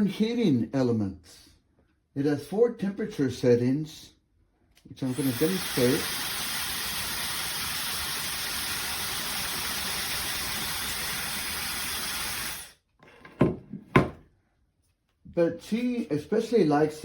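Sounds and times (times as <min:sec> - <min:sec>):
hair dryer blowing: 0:05.1 - 0:12.7.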